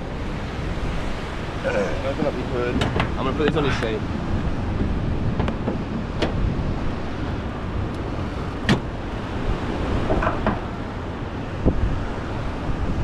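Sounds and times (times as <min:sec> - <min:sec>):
wind rumbling on microphone: 0:00.0 - 0:13.0.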